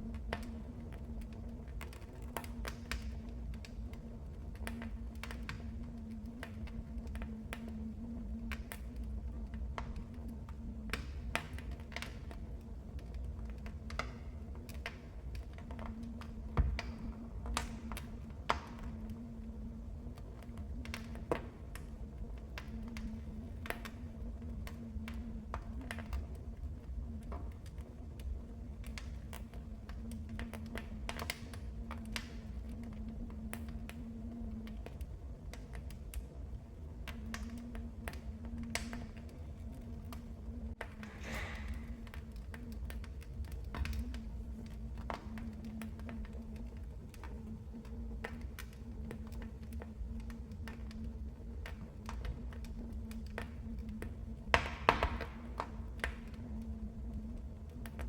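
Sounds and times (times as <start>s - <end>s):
faint steady hum: 0.0s - 58.0s
wood fire crackling and popping: 0.0s - 58.0s
low rumble: 40.2s - 43.1s.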